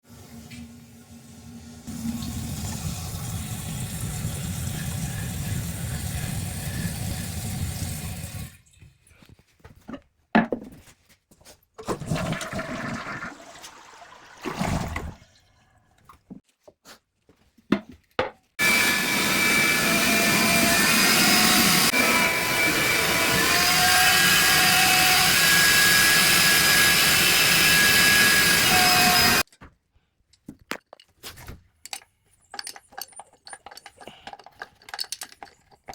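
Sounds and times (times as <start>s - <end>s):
toilet flushing: 0.0s - 8.7s, 11.8s - 15.7s.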